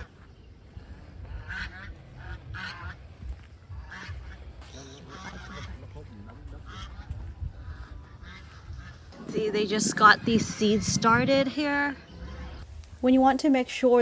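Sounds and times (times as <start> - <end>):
wind rumbling on microphone: 0.0 - 14.0
fowl honking: 1.4 - 3.0, 3.7 - 9.7.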